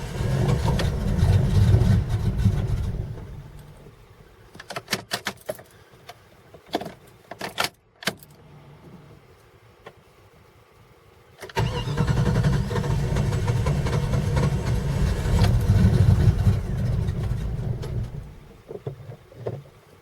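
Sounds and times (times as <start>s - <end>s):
engine cranking on starter: 0.0s - 3.3s, 11.4s - 18.5s.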